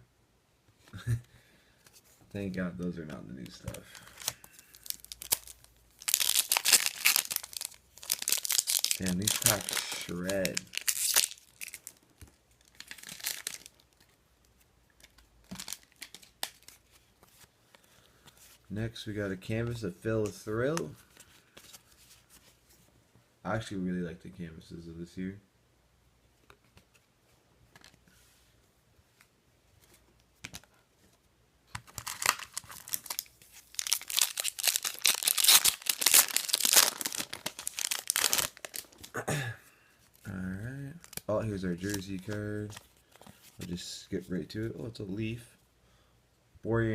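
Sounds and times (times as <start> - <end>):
foil wrapper crinkling and tearing: 3.9 - 12.0, 12.6 - 14.1, 15.1 - 16.8, 31.9 - 39.1, 40.9 - 42.8.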